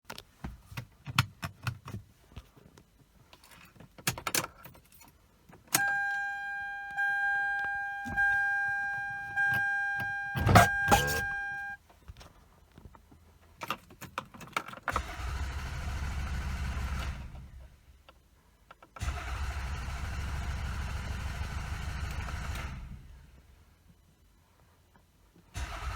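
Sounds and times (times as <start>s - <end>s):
electronic warning chime: 5.8s - 11.8s.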